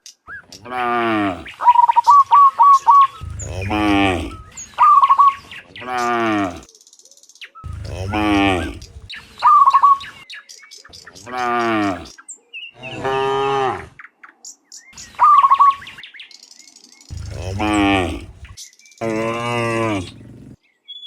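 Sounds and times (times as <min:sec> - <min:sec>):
cattle mooing: 0:03.2 - 0:04.6, 0:05.9 - 0:06.6, 0:07.7 - 0:09.1, 0:11.4 - 0:12.1, 0:17.1 - 0:20.6
short loud cattle calls: 0:17.1 - 0:20.6.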